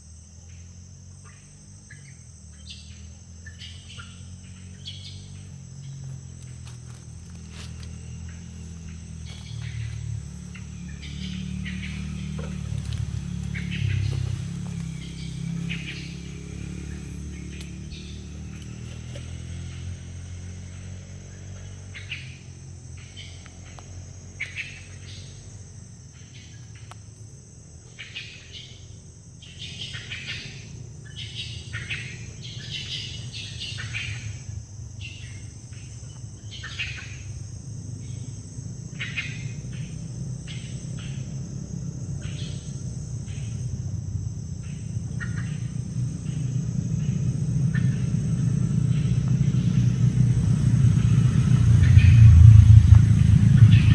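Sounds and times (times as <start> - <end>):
low rumble: 5.3 - 20.4, 43.0 - 53.9.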